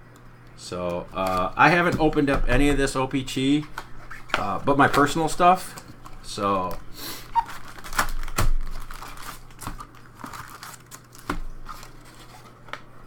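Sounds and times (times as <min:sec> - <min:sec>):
plastic wrapping crinkling and tearing: 0:01.1 - 0:01.7, 0:03.6 - 0:12.9.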